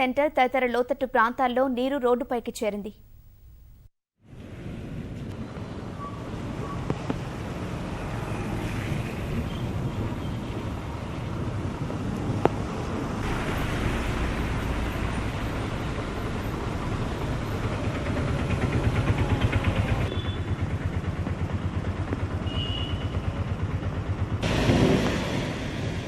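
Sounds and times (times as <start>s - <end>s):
wind: 4.2s - 26.0s
vehicles on wet roads: 4.4s - 26.0s
rain: 6.2s - 17.6s, 24.4s - 26.0s.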